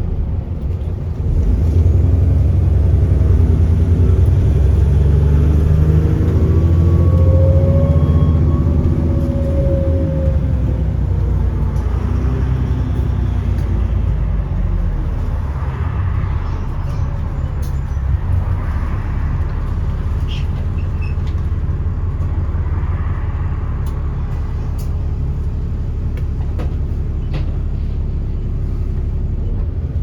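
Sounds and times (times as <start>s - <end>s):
bus diesel engine rumble: 0.0s - 30.0s
road noise: 0.0s - 30.0s
pitched whine: 6.0s - 11.9s.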